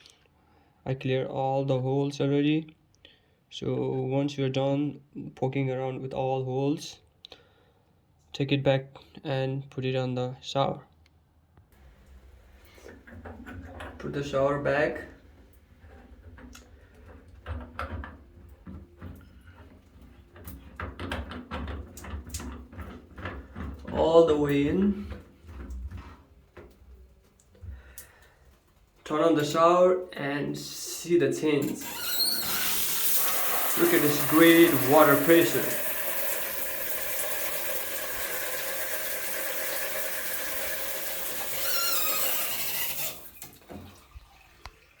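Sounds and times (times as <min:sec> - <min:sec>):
shower water spraying: 0:31.6 - 0:44.5
brief squeak: 0:31.9 - 0:32.7, 0:41.6 - 0:43.2.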